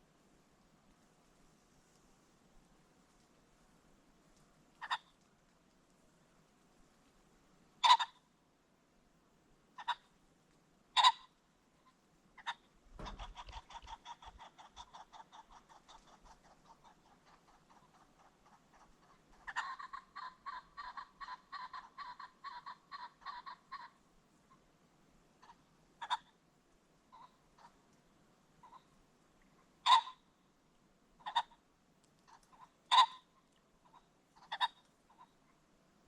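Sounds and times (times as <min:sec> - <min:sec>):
pheasant clucking: 0:04.8 - 0:05.2, 0:07.8 - 0:08.2, 0:09.8 - 0:10.1, 0:10.9 - 0:24.6, 0:25.4 - 0:26.4, 0:27.1 - 0:27.8, 0:28.6 - 0:29.0, 0:29.8 - 0:30.3, 0:31.2 - 0:31.6, 0:32.2 - 0:35.4.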